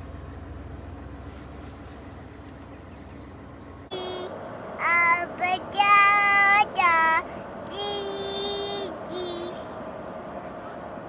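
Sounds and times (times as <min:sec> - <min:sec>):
car road and engine rumble: 0:00.0 - 0:11.0
child singing: 0:03.9 - 0:09.7.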